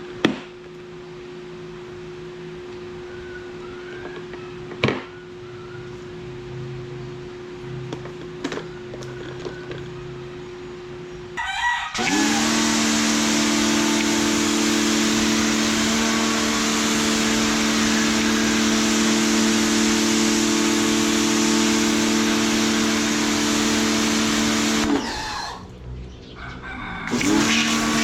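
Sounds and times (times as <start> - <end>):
pressure washer motor hum: 11.9 - 25.7, 27.1 - 28.0
high-pressure water jet hissing: 12.0 - 25.6, 27.1 - 28.0.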